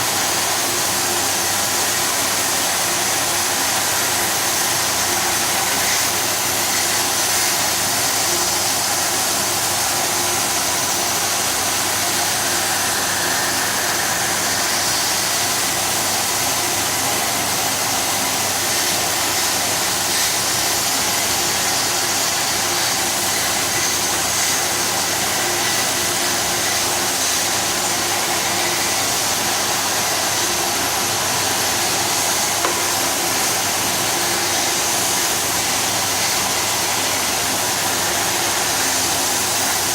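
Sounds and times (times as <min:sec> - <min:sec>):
plasma cutter hissing: 0:00.0 - 0:39.9
faint high whine: 0:11.5 - 0:16.4.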